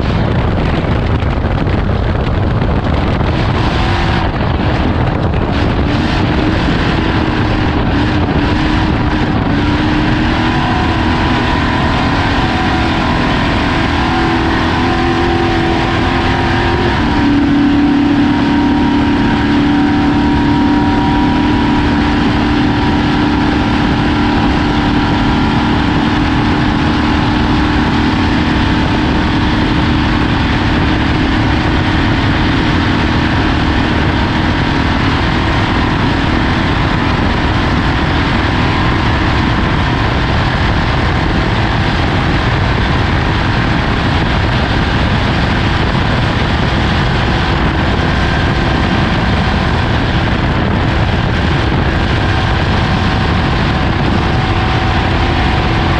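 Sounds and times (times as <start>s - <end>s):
rough driving noise: 0.0s - 55.9s
vehicle engine running: 0.0s - 55.9s.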